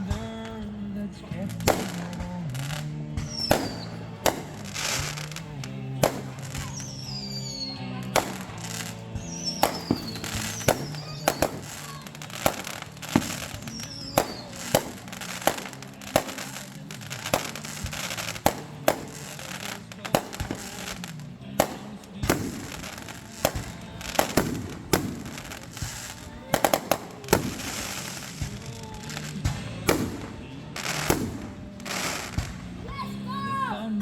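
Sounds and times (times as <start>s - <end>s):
fireworks bangs: 0.0s - 33.0s
song playing: 0.0s - 34.0s
falling whistles: 3.2s - 5.4s, 6.0s - 16.7s.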